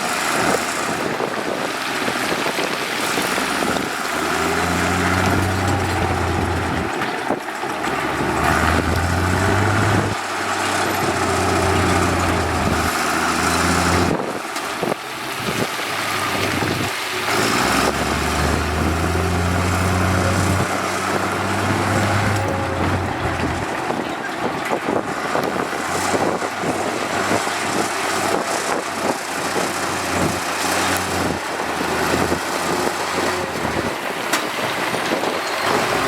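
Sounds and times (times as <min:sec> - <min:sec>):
heavy diesel machinery engine drone: 0:00.0 - 0:36.0.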